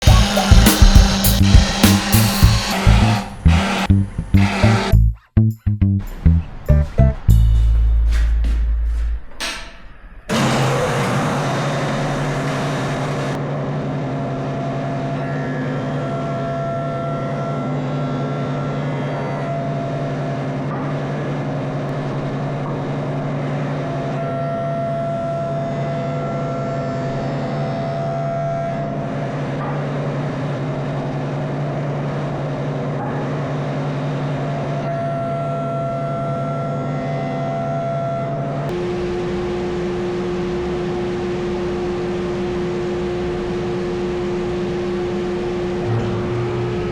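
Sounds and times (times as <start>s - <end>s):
wood lathe motor hum: 0.0s - 4.9s, 10.3s - 13.4s, 38.7s - 46.9s.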